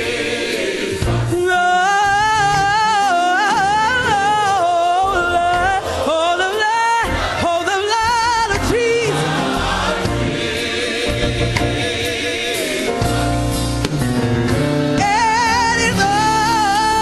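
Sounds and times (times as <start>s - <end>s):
choir singing held chord: 0.0s - 13.9s
band playing: 0.0s - 17.0s
solo singer with vibrato: 1.3s - 9.3s, 14.9s - 17.0s
steady bass: 8.5s - 17.0s.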